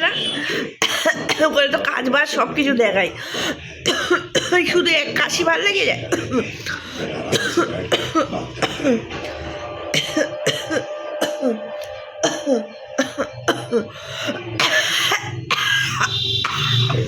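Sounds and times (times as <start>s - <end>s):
woman coughing: 0.0s - 2.0s, 3.8s - 9.1s, 10.0s - 17.0s
woman clearing throat: 0.2s - 1.9s, 3.8s - 4.8s, 6.0s - 9.1s, 10.0s - 17.0s.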